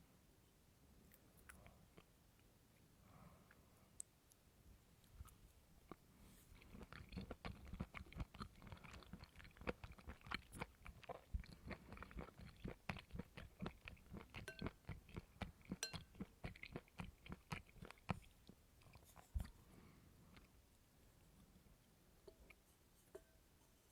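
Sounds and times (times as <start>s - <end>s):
wet crunchy chewing: 5.9s - 19.6s.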